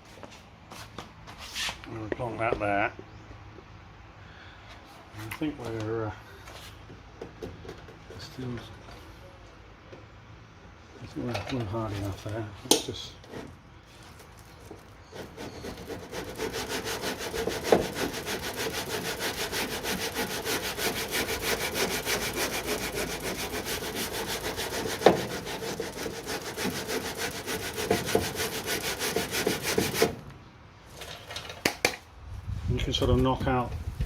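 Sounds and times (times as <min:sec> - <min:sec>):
sanding block rasping strokes: 0:15.1 - 0:30.2.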